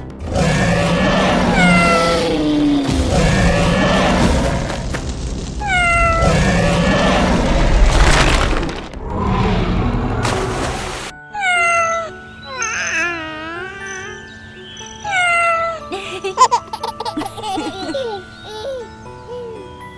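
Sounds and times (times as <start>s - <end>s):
music: 0.0s - 7.8s, 8.4s - 19.9s
loud rough noise: 1.6s - 5.7s
cat meowing: 11.4s - 12.2s.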